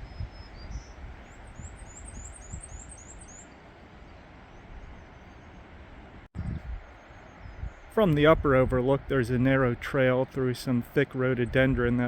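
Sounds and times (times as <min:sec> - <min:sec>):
small bird chirping: 0:00.0 - 0:04.2.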